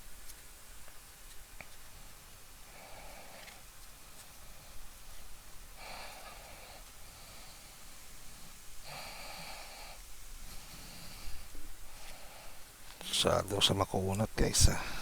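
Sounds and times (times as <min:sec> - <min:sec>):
man breathing heavily through nose: 0:02.6 - 0:13.2, 0:14.6 - 0:15.0.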